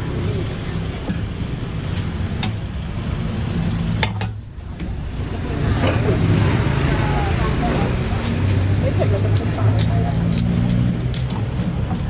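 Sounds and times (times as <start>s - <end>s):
rising whine: 0.0s - 8.5s
engine humming: 0.0s - 12.0s.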